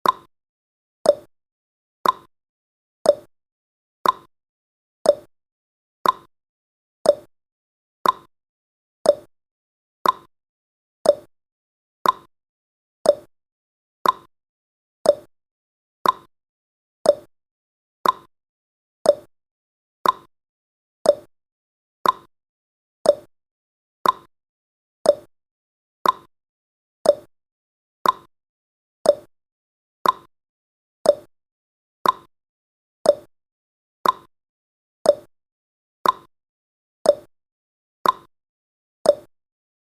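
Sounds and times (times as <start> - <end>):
timer ticking: 0.0 - 0.3, 1.1 - 1.3, 2.0 - 2.3, 3.1 - 3.3, 4.0 - 4.3, 5.1 - 5.3, 6.0 - 6.3, 7.1 - 7.3, 8.0 - 8.3, 9.0 - 9.3, 10.0 - 10.3, 11.0 - 11.3, 12.0 - 12.3, 13.0 - 13.3, 14.0 - 14.3, 15.0 - 15.3, 16.0 - 16.3, 17.0 - 17.3, 18.0 - 18.3, 19.0 - 19.3, 20.0 - 20.3, 21.0 - 21.3, 22.0 - 22.3, 23.0 - 23.3, 24.0 - 24.3, 25.0 - 25.3, 26.0 - 26.3, 27.0 - 27.3, 28.0 - 28.3, 29.0 - 29.3, 30.0 - 30.3, 31.0 - 31.3, 32.0 - 32.3, 33.0 - 33.3, 34.0 - 34.3, 35.1 - 35.3, 36.0 - 36.3, 37.1 - 37.3, 38.0 - 38.3, 39.1 - 39.3.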